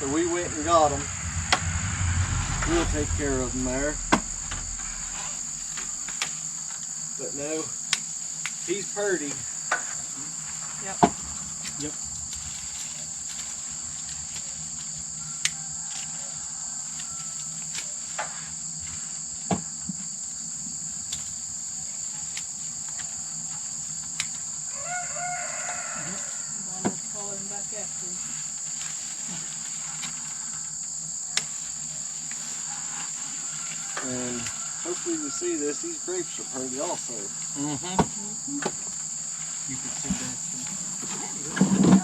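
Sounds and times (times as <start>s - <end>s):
high-pitched insect chorus: 0.0s - 6.3s, 7.2s - 42.0s
rooster crowing: 24.7s - 26.5s, 33.4s - 35.8s.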